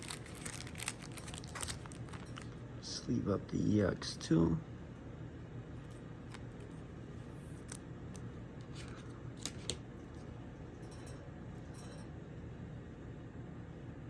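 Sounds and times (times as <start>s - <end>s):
plastic card sleeve crinkling: 0.0s - 2.6s, 6.2s - 9.8s
steady low hum: 0.0s - 14.0s.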